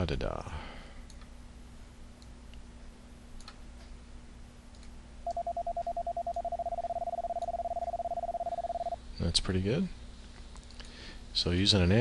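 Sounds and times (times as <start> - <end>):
fast morse code beeps: 5.3 - 9.0.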